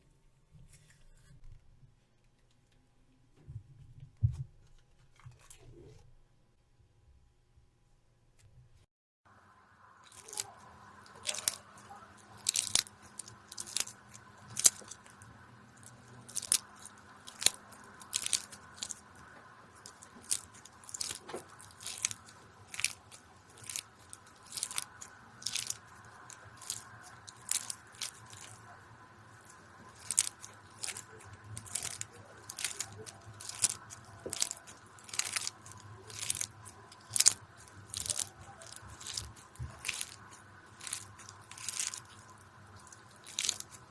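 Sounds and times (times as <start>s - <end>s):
slime crackling and popping: 10.0s - 43.9s.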